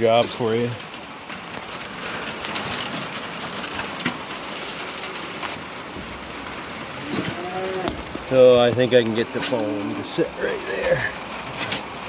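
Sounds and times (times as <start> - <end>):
shovel scraping: 7.0 - 8.0.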